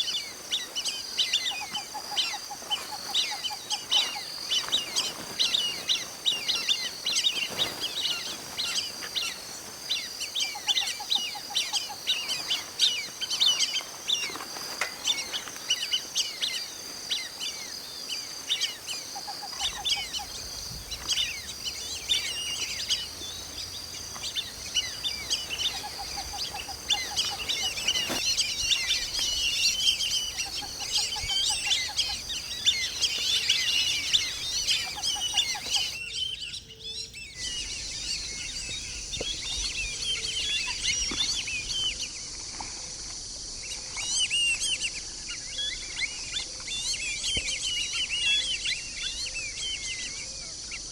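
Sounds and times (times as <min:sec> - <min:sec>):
ducks whistling: 0:18.6 - 0:36.4.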